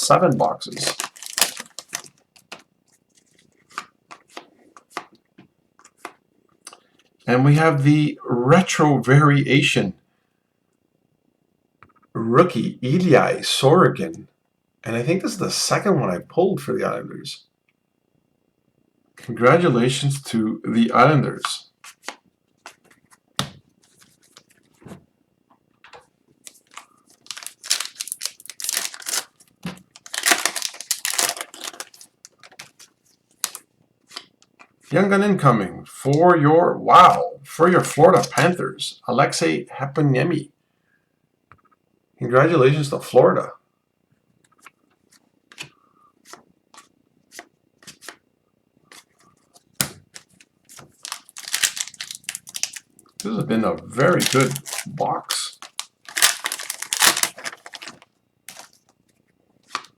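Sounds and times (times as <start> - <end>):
wrapper tearing and crinkling: 0.3 - 2.6, 26.5 - 32.8, 33.4 - 33.6, 50.2 - 53.3, 54.0 - 58.8
trading cards flipping: 0.3 - 5.2, 25.9 - 29.4, 30.0 - 34.3, 48.9 - 53.4, 54.0 - 58.9.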